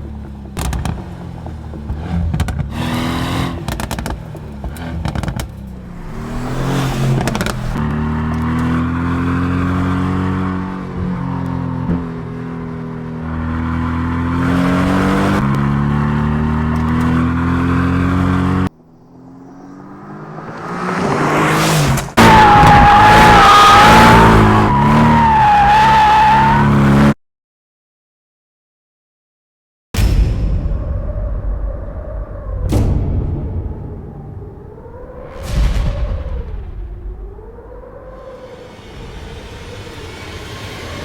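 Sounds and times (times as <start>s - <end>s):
car engine revving: 0.0s - 27.2s.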